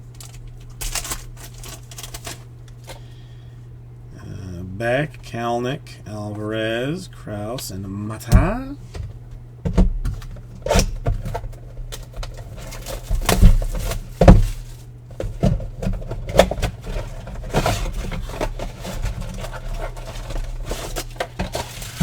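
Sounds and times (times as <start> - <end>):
cards and packaging handled: 0.0 - 3.1
low electrical hum: 0.0 - 22.0.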